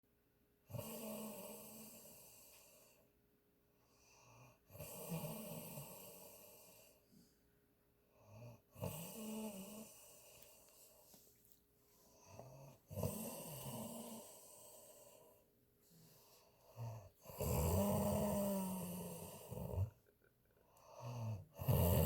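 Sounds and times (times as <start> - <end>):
woman snoring: 0.7 - 2.6, 4.3 - 6.9, 8.2 - 10.4, 12.3 - 15.3, 16.7 - 20.0, 20.8 - 22.0.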